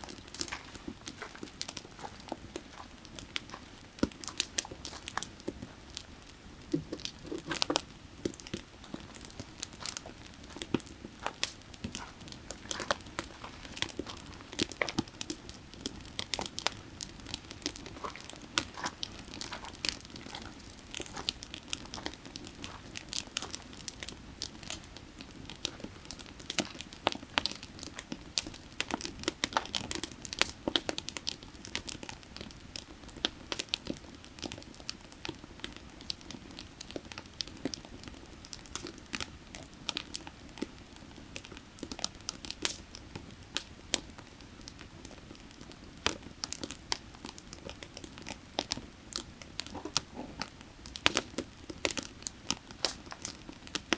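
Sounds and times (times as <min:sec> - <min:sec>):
firewood crackling and popping: 0:00.0 - 0:53.9.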